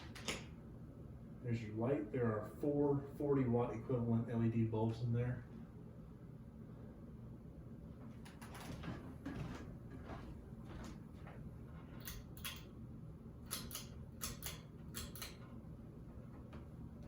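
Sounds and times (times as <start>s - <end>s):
ceiling fan hum: 0.0s - 17.0s
fan switch clicks: 12.0s - 12.7s, 13.4s - 15.6s.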